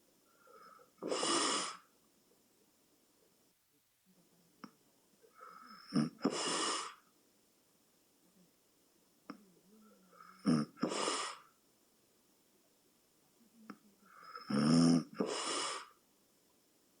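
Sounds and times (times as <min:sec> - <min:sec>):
person snoring: 0:05.6 - 0:07.0, 0:10.2 - 0:11.4, 0:14.2 - 0:16.0.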